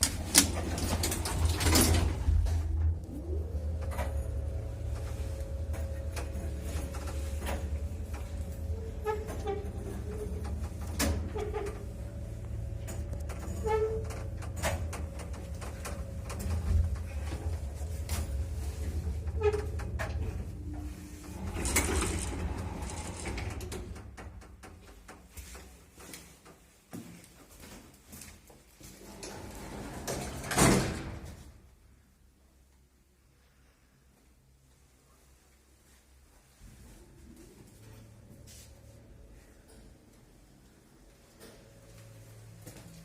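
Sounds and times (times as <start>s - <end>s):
lift humming and whining: 0.0s - 24.7s, 36.6s - 43.0s.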